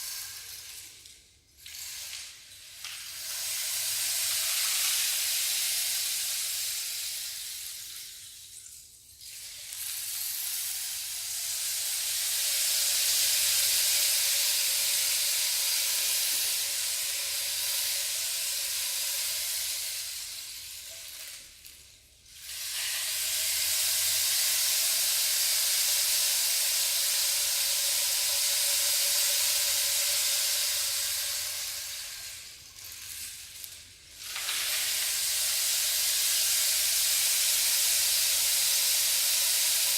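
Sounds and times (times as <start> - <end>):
rain stick hissing cascade: 22.4 - 39.9.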